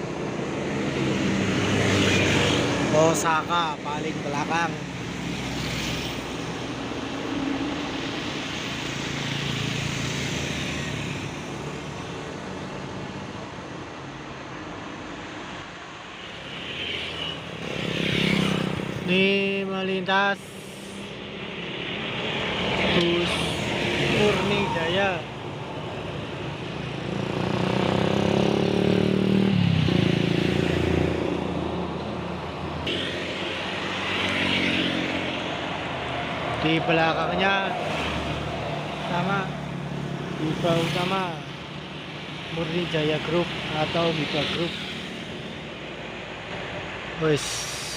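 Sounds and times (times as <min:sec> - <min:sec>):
bus passing by: 0:04.7 - 0:19.0, 0:20.4 - 0:42.4.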